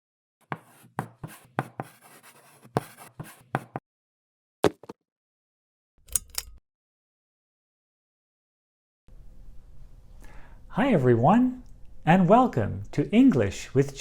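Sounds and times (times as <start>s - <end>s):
scratchy scraping: 0.5s - 3.8s.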